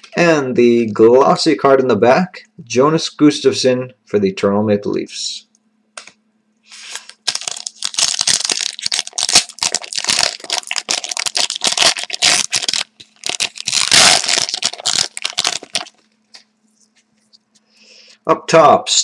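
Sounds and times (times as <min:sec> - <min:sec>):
wrapper tearing and crumpling: 0:06.8 - 0:16.0.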